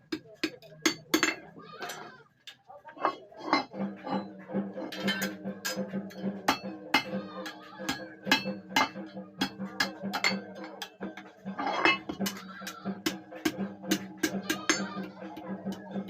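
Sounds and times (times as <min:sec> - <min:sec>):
hammer striking metal: 0:00.1 - 0:01.5, 0:03.0 - 0:16.0
background music: 0:03.4 - 0:16.0.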